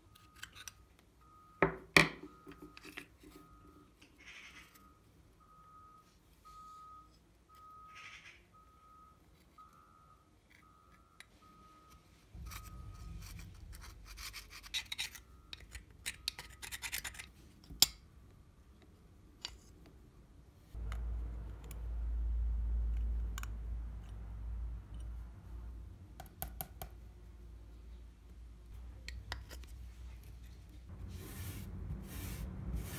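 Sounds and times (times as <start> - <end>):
short electronic beeps: 0.0 - 13.3
low hum: 9.8 - 14.6
strong low steady hum: 11.4 - 14.4, 29.9 - 32.9
scratching and scraping: 12.4 - 17.4.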